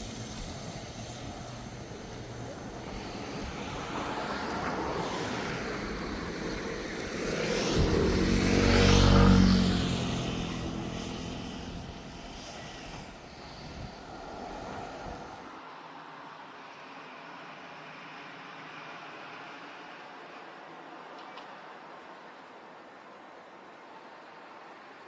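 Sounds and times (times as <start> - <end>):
airliner passing by: 0.0 - 21.0.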